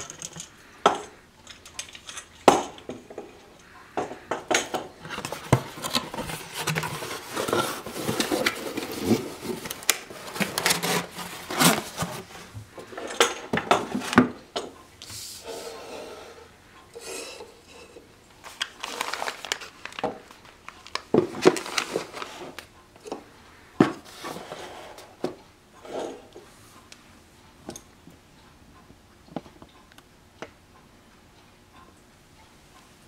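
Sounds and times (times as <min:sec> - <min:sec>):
small parts clicking and knocking: 0:00.0 - 0:07.6
hands rustling packaging: 0:04.5 - 0:13.1, 0:18.4 - 0:22.7.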